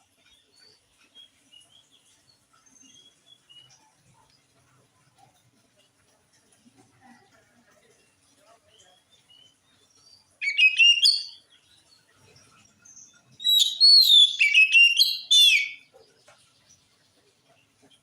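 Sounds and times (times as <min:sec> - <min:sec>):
bird singing whistled notes: 0:10.4 - 0:11.4, 0:12.9 - 0:15.8.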